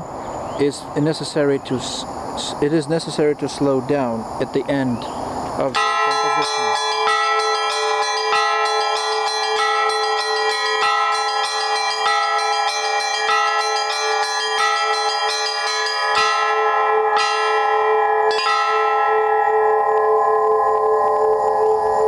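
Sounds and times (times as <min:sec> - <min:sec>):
church bells ringing: 0:05.6 - 0:22.0.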